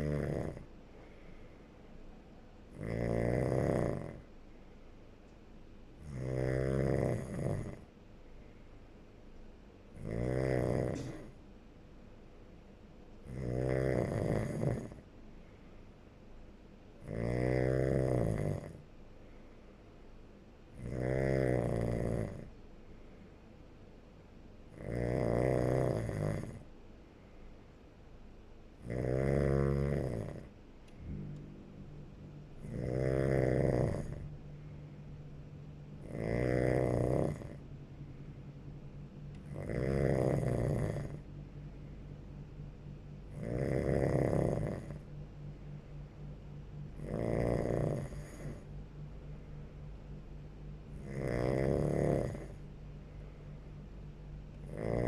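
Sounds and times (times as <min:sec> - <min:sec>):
person snoring: 0:00.0 - 0:01.4, 0:02.7 - 0:04.3, 0:06.0 - 0:07.9, 0:10.0 - 0:11.4, 0:13.3 - 0:15.0, 0:17.0 - 0:18.8, 0:20.8 - 0:22.5, 0:24.7 - 0:26.7, 0:28.8 - 0:31.4, 0:32.6 - 0:34.8, 0:36.0 - 0:37.6, 0:39.4 - 0:41.3, 0:43.3 - 0:45.1, 0:47.0 - 0:48.7, 0:51.0 - 0:52.6, 0:54.6 - 0:55.0
quiet breathing: 0:00.0 - 0:05.4, 0:06.0 - 0:09.2, 0:09.8 - 0:11.6, 0:13.2 - 0:16.3, 0:17.7 - 0:24.0, 0:24.8 - 0:55.0
low hum: 0:26.7 - 0:55.0.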